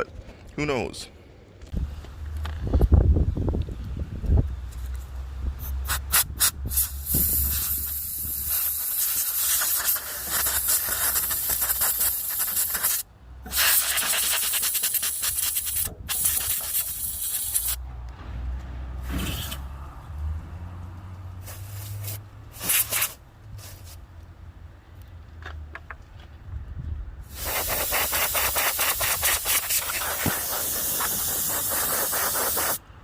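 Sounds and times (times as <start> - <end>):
compressed gas spraying: 5.6 - 17.8, 19.0 - 19.7, 21.4 - 24.0, 27.2 - 32.8.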